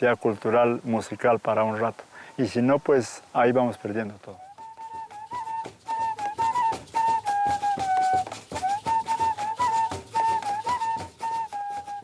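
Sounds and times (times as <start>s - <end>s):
flute melody: 4.3s - 12.0s
steady drum beats: 4.5s - 12.0s.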